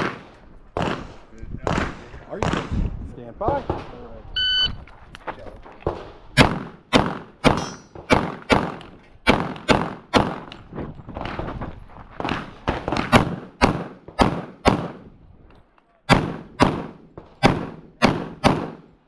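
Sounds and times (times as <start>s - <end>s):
pistol shots: 0.0s - 2.8s, 5.8s - 10.6s, 12.2s - 15.0s, 16.1s - 18.9s.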